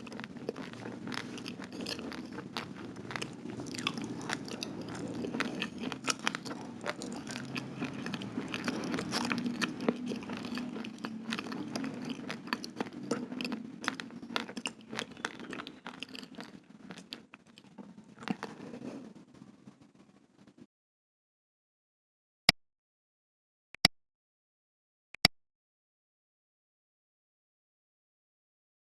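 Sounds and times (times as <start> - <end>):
chewing raw rice crunching: 0.0 - 19.0.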